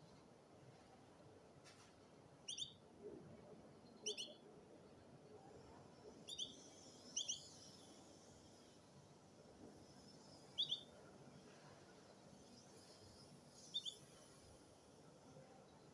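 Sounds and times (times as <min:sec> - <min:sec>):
canary chirping: 0:04.0 - 0:04.4.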